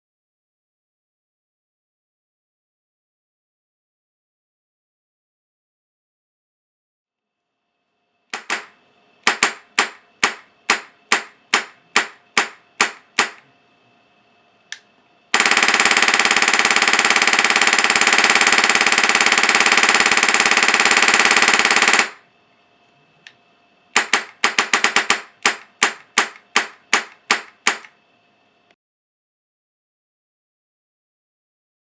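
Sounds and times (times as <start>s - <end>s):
airsoft gun firing: 8.4s - 13.4s, 15.4s - 22.2s, 24.0s - 27.9s.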